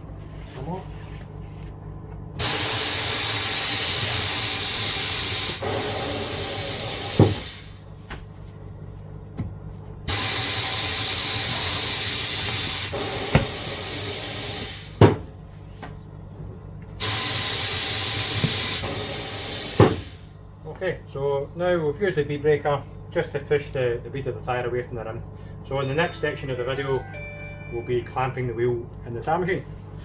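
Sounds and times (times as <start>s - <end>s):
compressed air hissing: 2.4s - 7.7s, 10.1s - 15.0s, 17.0s - 20.2s.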